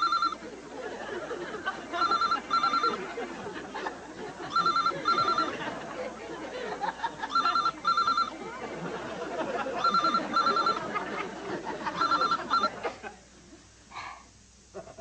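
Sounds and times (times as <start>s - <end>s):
telephone double ring: 0.0s - 0.4s, 2.0s - 3.0s, 4.5s - 5.7s, 7.2s - 8.3s, 9.8s - 11.0s, 11.9s - 12.7s.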